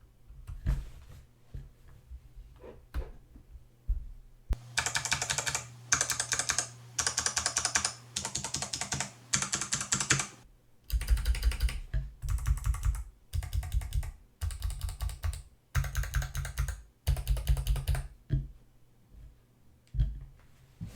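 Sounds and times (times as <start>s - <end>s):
clicky mechanical keyboard typing: 4.6s - 18.1s.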